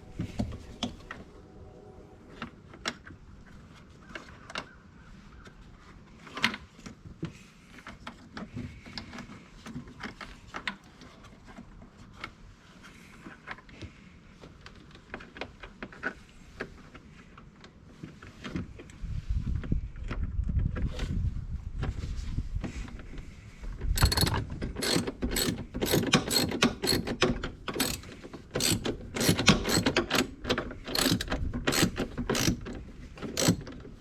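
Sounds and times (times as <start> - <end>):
hand tools clicking and clinking: 24.0 - 33.8.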